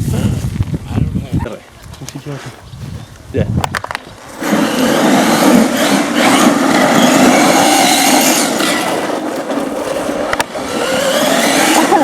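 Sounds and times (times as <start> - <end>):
tyre and ground noise: 0.0 - 12.0
rc truck motor whining: 4.4 - 12.0.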